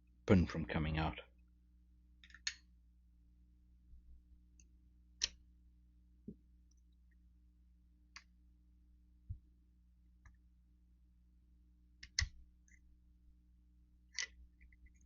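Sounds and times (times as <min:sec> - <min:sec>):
faint steady hum: 0:00.0 - 0:15.0
shotgun parts clicking and knocking: 0:02.2 - 0:02.7.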